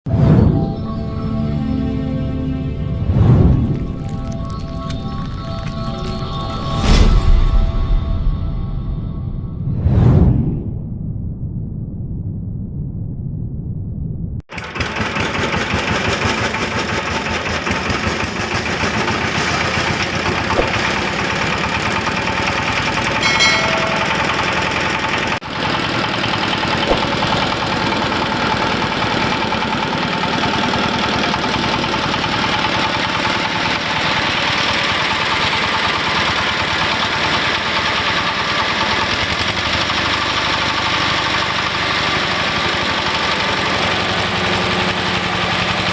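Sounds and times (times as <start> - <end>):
low rumble: 2.7 - 14.5
grinder machine running: 14.5 - 45.9.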